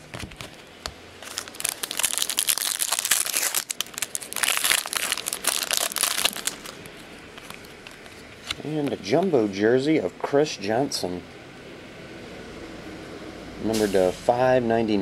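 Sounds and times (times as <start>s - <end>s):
foil wrapper crinkling: 0.0s - 8.6s.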